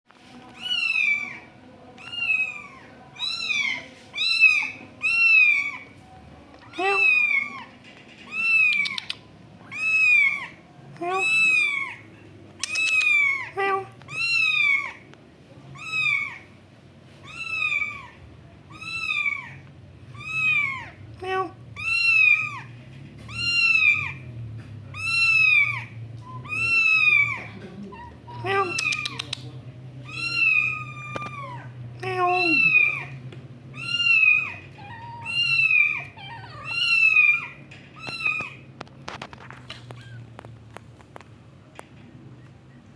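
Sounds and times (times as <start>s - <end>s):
kitten meowing: 0.6s - 1.4s, 2.0s - 5.8s, 6.6s - 7.6s, 8.3s - 12.0s, 12.6s - 13.5s, 14.1s - 15.0s, 15.8s - 16.4s, 17.2s - 21.0s, 21.8s - 22.7s, 23.3s - 24.2s, 24.9s - 29.4s, 30.0s - 38.7s.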